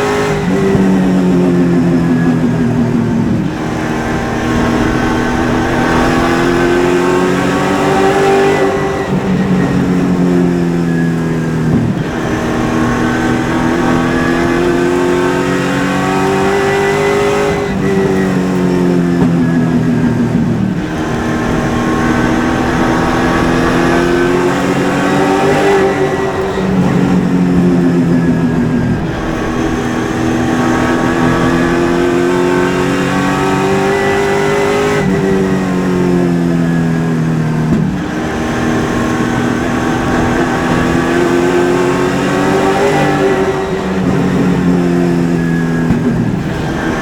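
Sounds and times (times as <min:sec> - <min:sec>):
race car engine at full throttle: 0:00.0 - 0:47.0.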